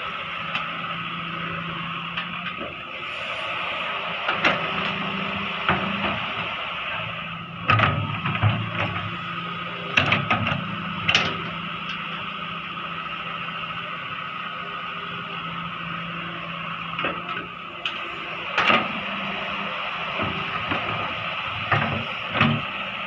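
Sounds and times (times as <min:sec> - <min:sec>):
excavator engine running: 0:00.0 - 0:23.0.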